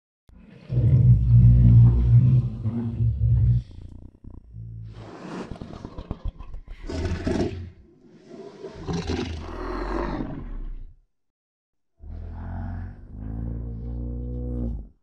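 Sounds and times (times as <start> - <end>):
giant creature roaring: 8.6 - 10.9.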